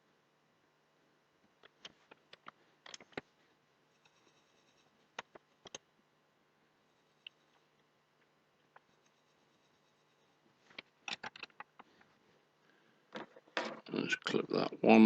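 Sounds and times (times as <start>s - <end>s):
small objects clicking and tapping: 1.6s - 3.3s, 5.1s - 5.8s, 10.7s - 12.0s.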